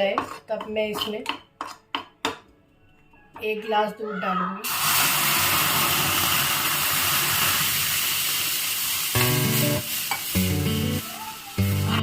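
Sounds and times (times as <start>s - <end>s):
frying pan sizzling: 4.7s - 12.0s
strummed acoustic guitar music: 9.2s - 11.0s, 11.6s - 12.0s.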